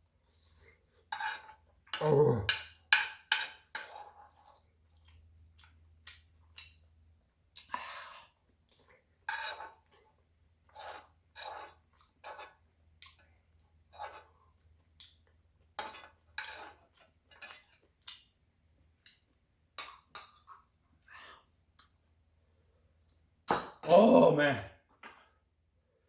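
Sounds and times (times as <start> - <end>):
person chewing food: 3.8 - 19.4.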